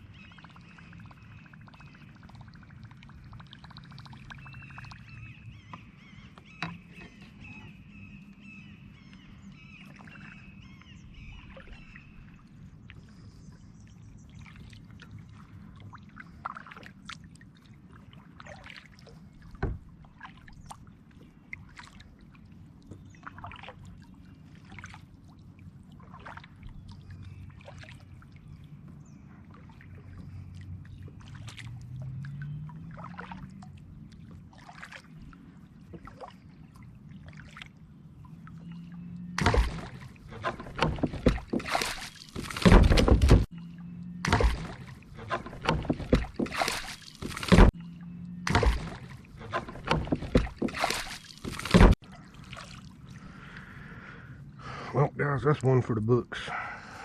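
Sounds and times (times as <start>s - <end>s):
kayak paddle splashes: 0.0s - 54.9s
loud splashing and knocking: 39.4s - 43.5s, 44.3s - 47.8s, 48.5s - 52.0s.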